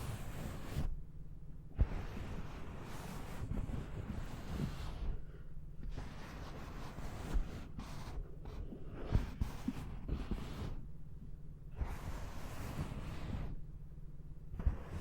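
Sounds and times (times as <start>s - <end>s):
soft rubbing and brushing: 0.0s - 1.0s, 1.8s - 11.0s, 11.7s - 13.7s, 14.5s - 15.0s
low background hum: 0.0s - 15.0s.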